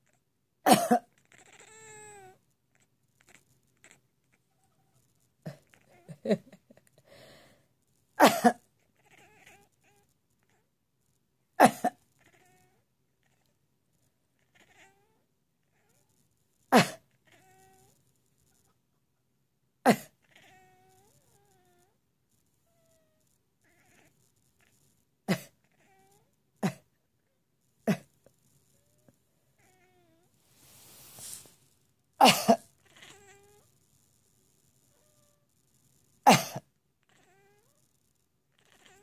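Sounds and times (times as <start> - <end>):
woman coughing hard: 0.7 - 1.1, 8.2 - 8.6, 11.6 - 12.0, 16.8 - 17.0, 32.2 - 32.6, 36.3 - 36.6
cat meowing: 1.2 - 4.0, 9.0 - 10.6, 12.2 - 13.5, 14.4 - 16.0, 17.2 - 18.0, 20.2 - 21.9, 22.7 - 24.7, 25.3 - 26.3, 32.8 - 33.7, 37.1 - 37.8, 38.6 - 39.0.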